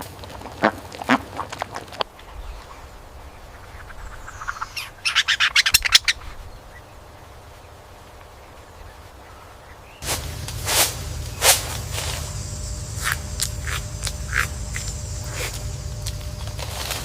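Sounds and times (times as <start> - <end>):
bird sharp rapid calls: 2.3 - 7.0, 10.8 - 15.9
low rumble: 10.0 - 17.0.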